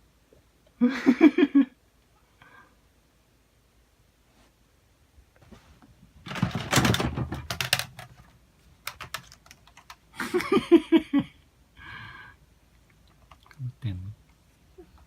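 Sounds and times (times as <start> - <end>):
plastic bricks clattering: 6.2 - 8.3.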